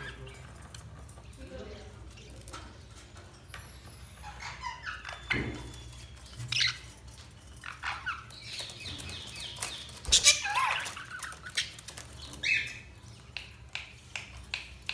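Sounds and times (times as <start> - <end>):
budgerigars chirping: 4.2 - 13.9.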